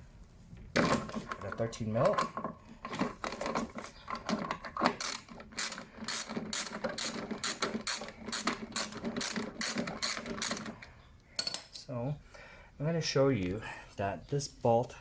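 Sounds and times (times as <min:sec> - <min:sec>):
ratchet wrench clicking: 0:05.0 - 0:10.8.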